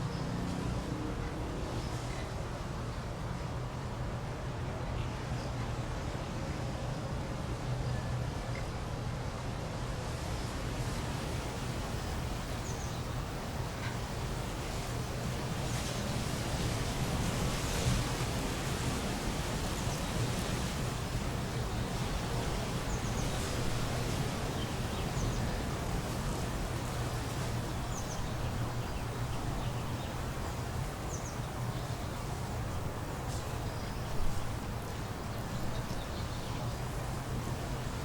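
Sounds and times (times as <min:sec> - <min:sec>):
background hiss: 0:08.9 - 0:38.0.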